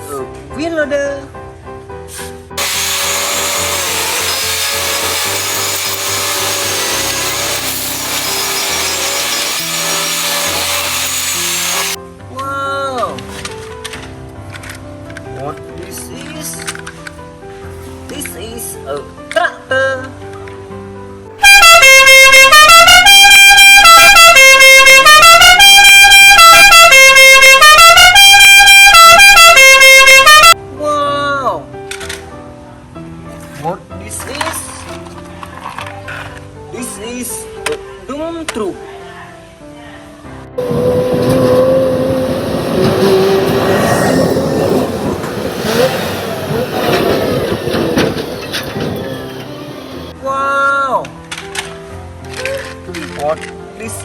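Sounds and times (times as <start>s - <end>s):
multi-tone bus horn tune: 21.4s - 30.6s, 40.6s - 50.1s.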